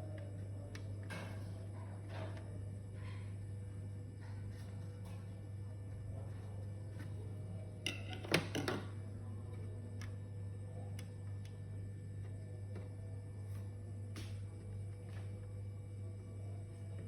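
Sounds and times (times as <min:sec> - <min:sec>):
steady low hum: 0:08.8 - 0:17.0.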